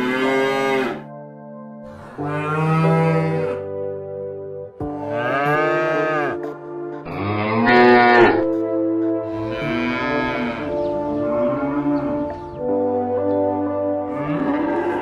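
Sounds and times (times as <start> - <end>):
cattle mooing: 0.0 - 1.1, 1.9 - 3.7, 5.0 - 6.5, 7.1 - 8.5, 9.3 - 12.4, 14.1 - 15.0
background music: 0.0 - 15.0.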